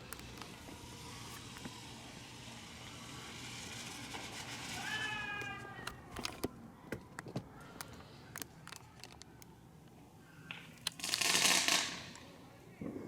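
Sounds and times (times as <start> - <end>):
firecrackers popping: 10.7 - 12.9.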